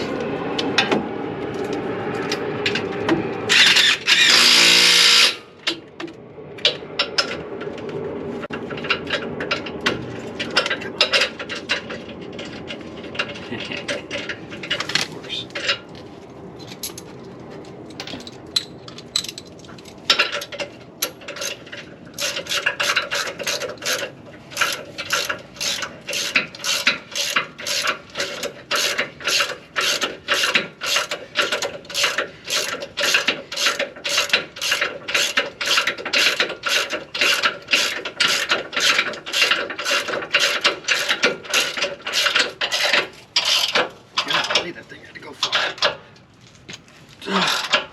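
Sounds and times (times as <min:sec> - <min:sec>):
ratchet wrench clicking: 0:22.2 - 0:43.8.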